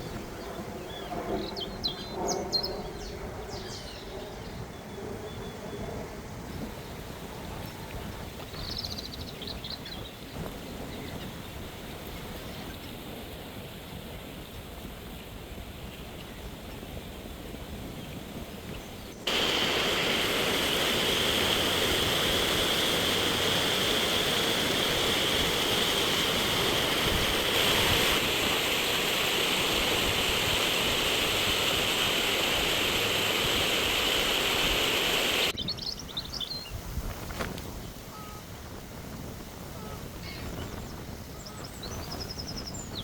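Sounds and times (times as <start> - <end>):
faint hiss: 7.0 - 35.5
loud rushing noise: 19.3 - 35.5.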